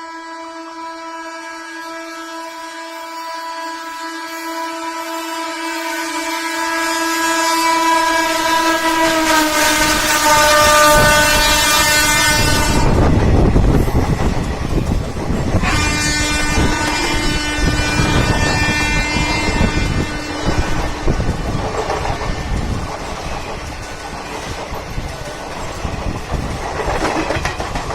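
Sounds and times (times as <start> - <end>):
locomotive twin-tone air horn: 0.0 - 13.2, 15.5 - 22.7
train rumble and wheel clatter: 0.0 - 27.9.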